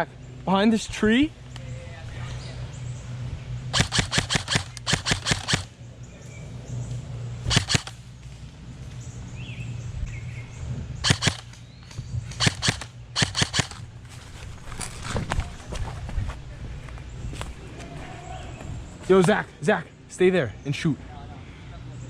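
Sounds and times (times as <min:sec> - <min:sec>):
airsoft guns firing bursts: 0:03.7 - 0:05.8, 0:07.5 - 0:08.0, 0:11.0 - 0:11.6, 0:12.4 - 0:13.9.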